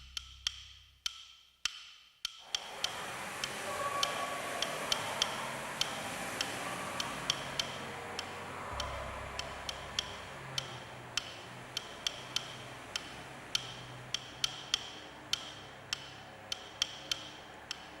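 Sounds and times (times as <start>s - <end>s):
sharp dry ticking clicks: 0.0s - 18.0s
faint low sustained tones: 8.6s - 11.1s.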